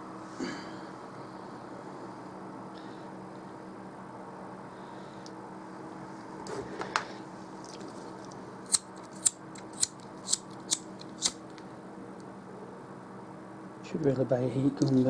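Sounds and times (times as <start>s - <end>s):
hand cutters snipping: 8.7s - 11.4s.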